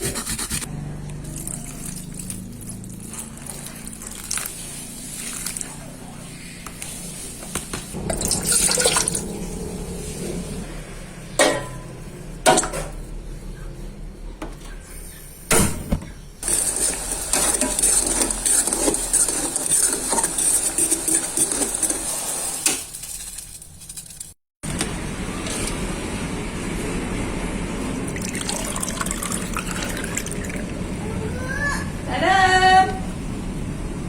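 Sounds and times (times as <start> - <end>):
liquid pouring into container: 8.0 - 9.4, 28.1 - 30.8.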